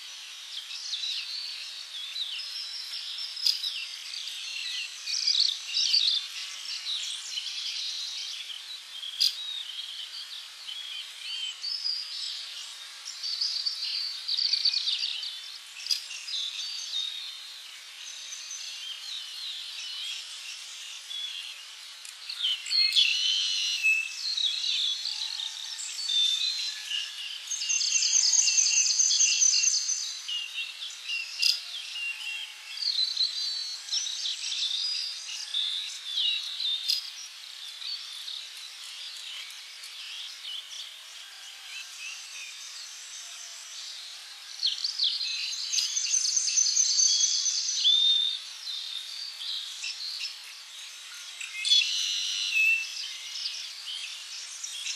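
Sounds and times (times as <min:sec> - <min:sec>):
birds chirping and whistling: 0:22.3 - 0:25.1, 0:27.5 - 0:37.0, 0:44.6 - 0:48.4, 0:51.4 - 0:54.9.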